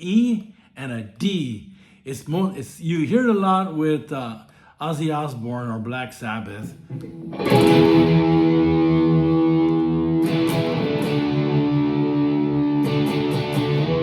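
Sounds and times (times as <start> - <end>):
distorted electric guitar chords: 6.8 - 14.0.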